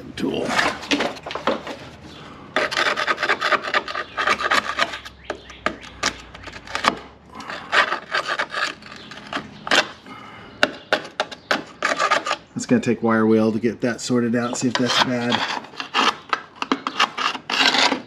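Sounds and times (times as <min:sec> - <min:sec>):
hand tool scraping sheet metal: 0:02.6 - 0:10.0, 0:10.7 - 0:12.6, 0:14.4 - 0:18.0.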